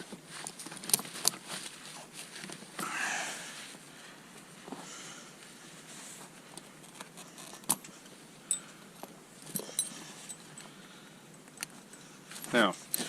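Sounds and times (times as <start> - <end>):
chain links clinking: 8.5 - 10.7.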